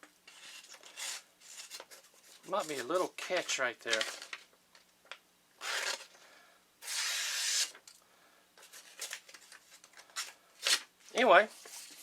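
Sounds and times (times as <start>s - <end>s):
paper rustling: 0.3s - 4.5s, 8.6s - 12.0s
knife slicing paper: 6.8s - 7.8s.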